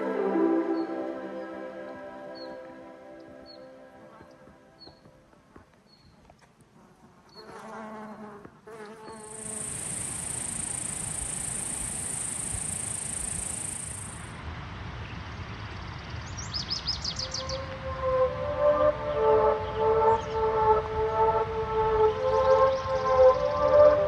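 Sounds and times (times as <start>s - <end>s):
music: 0.0s - 5.4s, 17.6s - 24.0s
insect chirps: 8.8s - 14.4s
insect high buzz: 8.8s - 14.4s.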